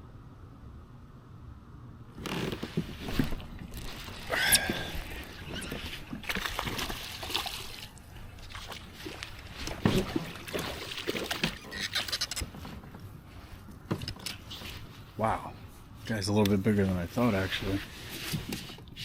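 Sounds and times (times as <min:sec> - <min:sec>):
water splashing and sloshing: 0:02.2 - 0:16.0.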